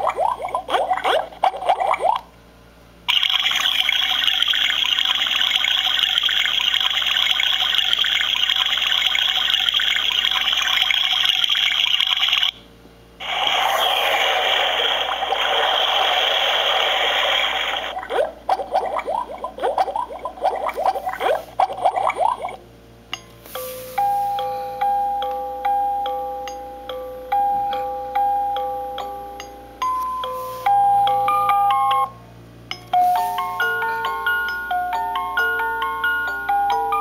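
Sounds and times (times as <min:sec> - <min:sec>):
rushing water sound from speaker: 0:13.2 - 0:18.0.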